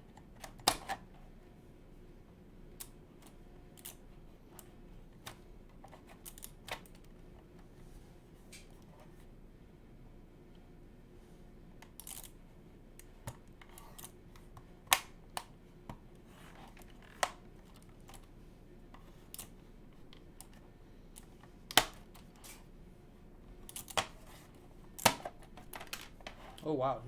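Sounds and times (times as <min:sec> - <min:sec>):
plastic case clicks and snaps: 0:14.9 - 0:16.0, 0:21.7 - 0:22.3, 0:25.0 - 0:26.4.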